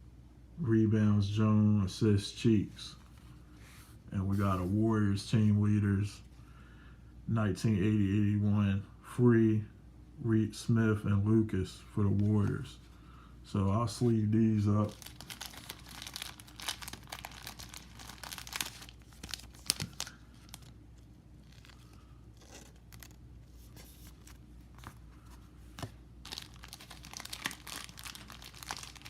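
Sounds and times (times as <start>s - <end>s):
plastic sleeves crinkling: 14.8s - 29.0s.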